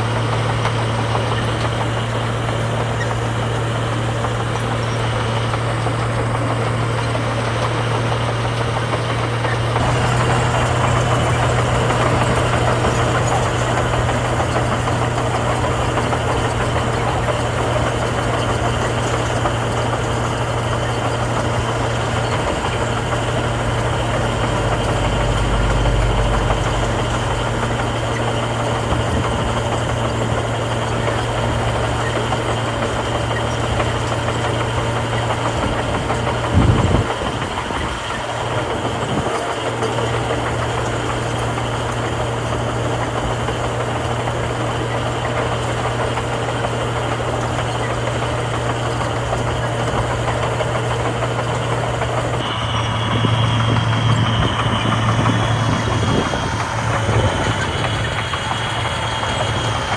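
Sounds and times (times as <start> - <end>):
heavy diesel engines running: 0.0 - 59.9
high-pitched whine: 52.4 - 59.9.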